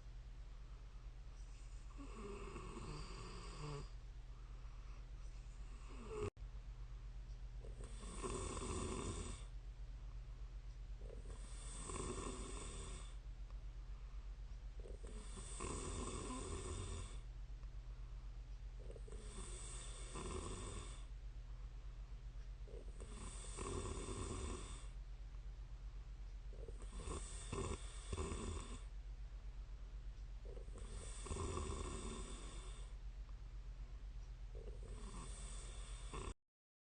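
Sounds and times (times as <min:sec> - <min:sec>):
steady low hum: 0:00.0 - 0:36.4
woman snoring: 0:01.7 - 0:04.0, 0:05.6 - 0:06.3, 0:07.6 - 0:09.5, 0:11.1 - 0:13.2, 0:14.8 - 0:17.2, 0:18.8 - 0:21.1, 0:22.7 - 0:25.0, 0:26.5 - 0:28.9, 0:30.5 - 0:32.9, 0:34.6 - 0:36.4.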